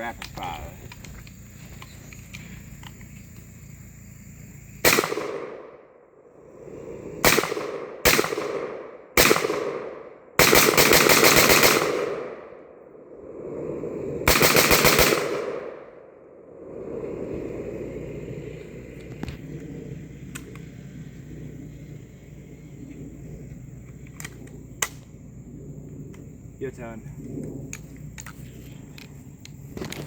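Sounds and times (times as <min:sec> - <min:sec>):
rifle shots with echo: 0:04.8 - 0:06.0, 0:07.2 - 0:12.7, 0:14.3 - 0:16.1.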